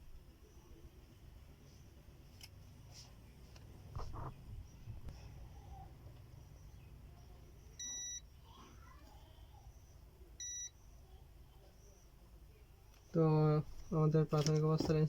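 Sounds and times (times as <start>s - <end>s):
short electronic beeps: 7.8s - 8.2s, 10.4s - 10.8s.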